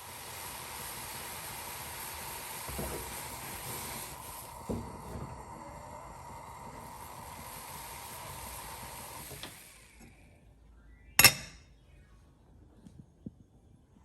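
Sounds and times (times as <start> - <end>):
steady hiss: 0.0 - 10.2
sharp knock with short ring: 11.2 - 11.6.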